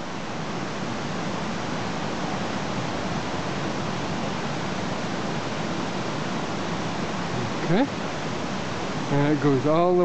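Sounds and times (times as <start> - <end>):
fast-flowing creek rushing: 0.0 - 10.0.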